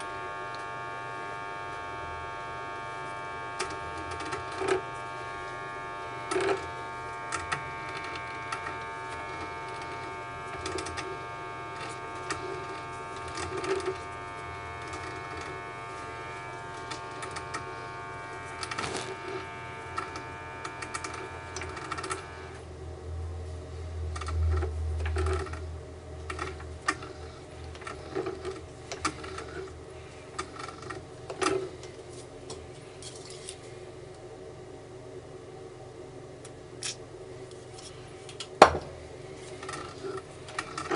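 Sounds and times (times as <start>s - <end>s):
machine-tool motor whining: 0.0s - 22.7s, 26.3s - 31.8s, 39.5s - 40.9s.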